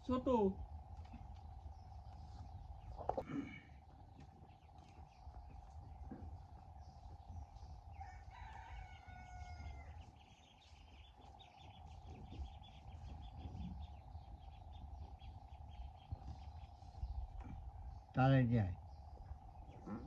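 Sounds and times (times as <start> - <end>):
steady hum: 0.0 - 20.0
rooster crowing: 7.9 - 10.2.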